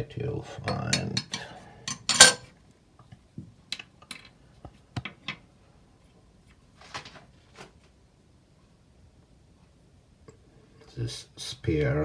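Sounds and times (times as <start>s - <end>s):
parts scraping: 0.7s - 2.5s
plastic and metal parts clattering: 1.0s - 2.4s.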